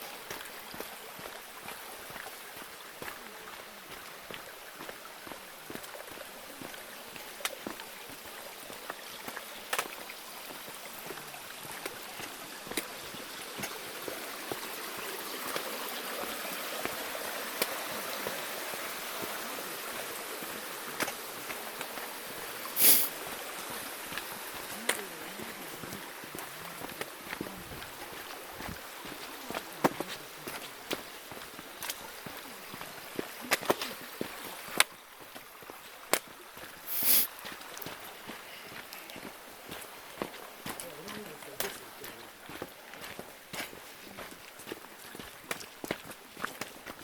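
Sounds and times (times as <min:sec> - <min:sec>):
mountain stream running: 0:00.0 - 0:47.0
footsteps on stones: 0:22.8 - 0:35.4, 0:36.2 - 0:47.0.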